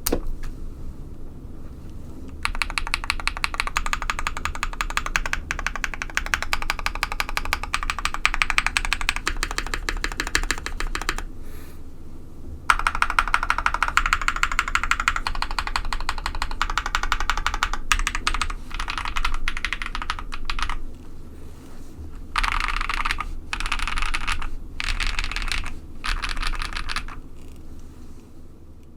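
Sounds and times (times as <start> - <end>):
fast typing on mechanical keyboard: 2.3 - 11.3, 12.7 - 20.9, 22.4 - 27.6.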